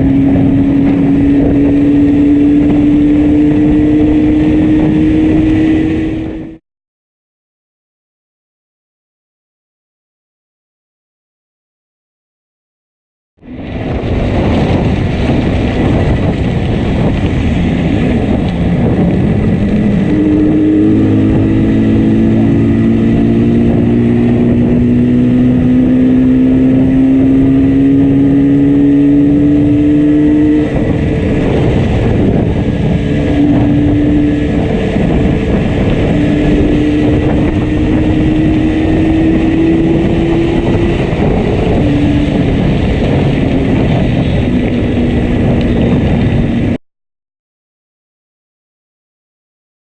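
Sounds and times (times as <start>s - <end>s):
misfiring motorcycle engine: 0.0s - 6.6s, 13.6s - 46.8s
wind and road noise: 0.0s - 6.6s, 13.4s - 46.8s.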